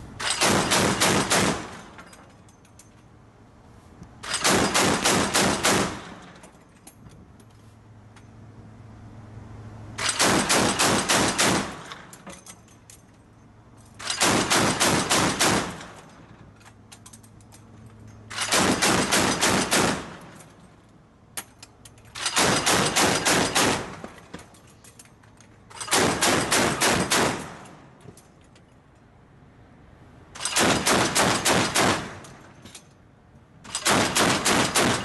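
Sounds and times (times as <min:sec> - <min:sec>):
machine gun firing bursts: 0:00.2 - 0:01.7, 0:04.3 - 0:06.2, 0:10.0 - 0:11.8, 0:14.1 - 0:15.8, 0:18.3 - 0:20.2, 0:22.2 - 0:23.9, 0:25.9 - 0:27.6, 0:30.4 - 0:32.1, 0:33.8 - 0:35.0.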